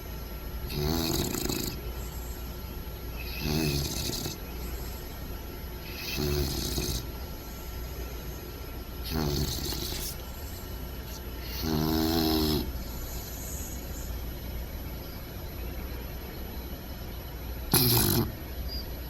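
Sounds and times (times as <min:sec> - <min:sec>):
steady low hum: 0:00.0 - 0:19.0
puppy snoring: 0:00.6 - 0:02.6, 0:03.2 - 0:14.4, 0:17.7 - 0:18.4.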